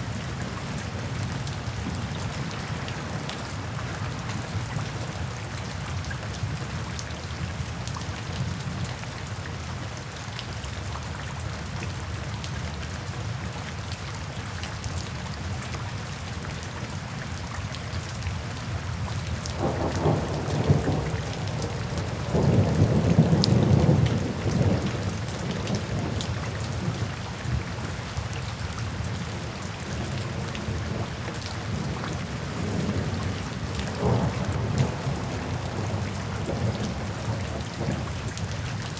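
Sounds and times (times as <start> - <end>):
heavy rain on a tin roof: 0.0 - 38.9
thunder rumbling: 19.6 - 27.0, 31.7 - 38.9.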